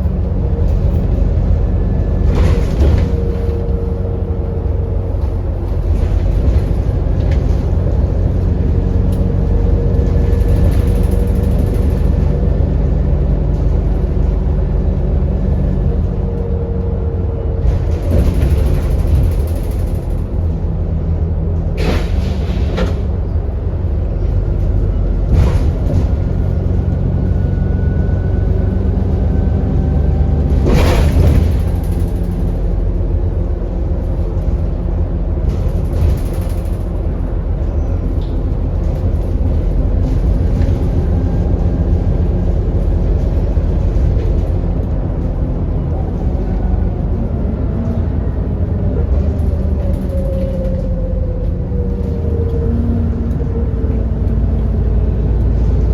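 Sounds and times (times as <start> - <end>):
bus engine rumble: 0.0 - 55.9
road noise: 0.0 - 55.9
knocks and rattles: 30.4 - 33.2.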